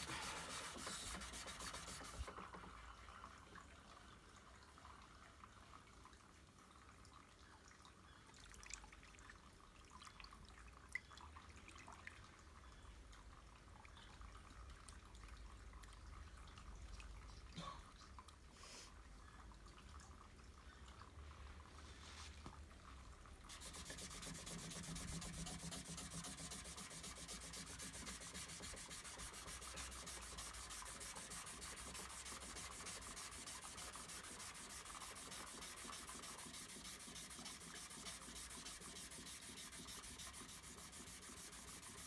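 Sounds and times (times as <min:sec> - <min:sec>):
dry sanding: 0:00.0 - 0:02.4, 0:23.5 - 0:42.0.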